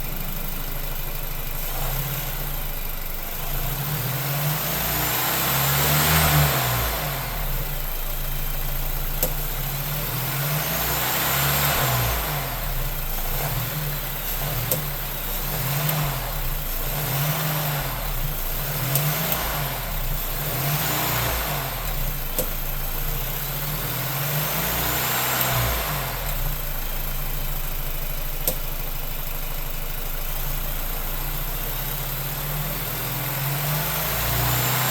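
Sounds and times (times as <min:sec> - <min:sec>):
car engine revving: 0:00.0 - 0:34.9.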